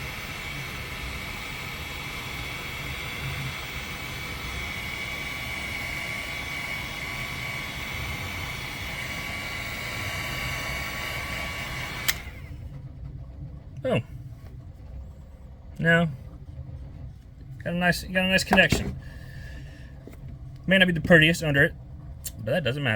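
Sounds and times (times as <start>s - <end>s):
heat gun fan whining: 0.0s - 22.9s.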